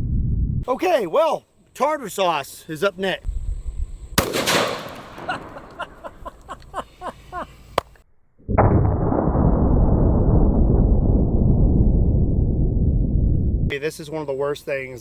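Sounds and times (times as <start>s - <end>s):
gunshot: 4.2s - 5.7s, 8.5s - 9.5s.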